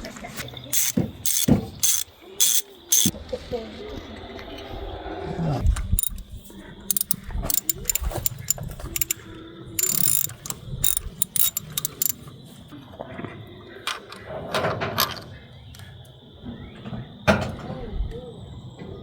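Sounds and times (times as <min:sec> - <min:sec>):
socket ratchet clicking: 0:00.7 - 0:03.1, 0:06.0 - 0:09.2, 0:09.8 - 0:12.2
metallic knocks: 0:06.9 - 0:09.2.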